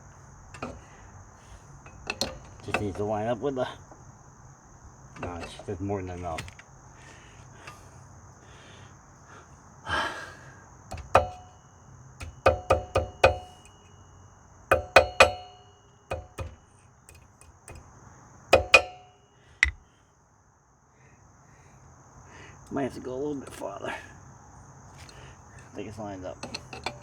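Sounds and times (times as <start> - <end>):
tools striking metal: 10.9 - 11.6, 12.2 - 13.9, 14.7 - 17.9, 18.5 - 19.8.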